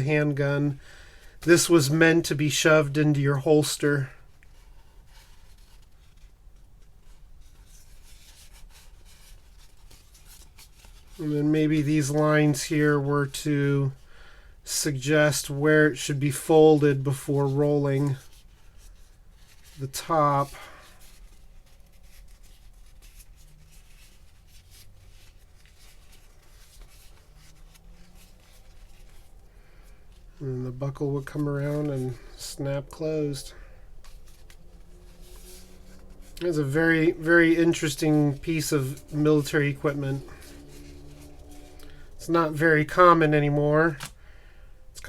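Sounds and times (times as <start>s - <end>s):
plastic bag rubbing and scratching: 16.9s - 29.5s, 30.1s - 44.0s.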